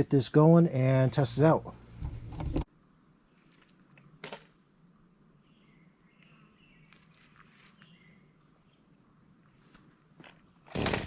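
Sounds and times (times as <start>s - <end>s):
faint high bird chirps: 5.4s - 8.9s.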